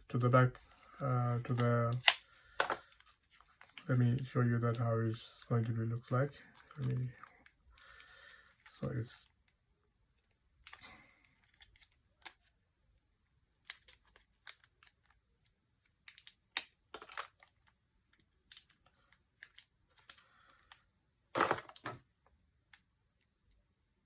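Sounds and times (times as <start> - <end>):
packaging rustling: 21.4 - 22.0.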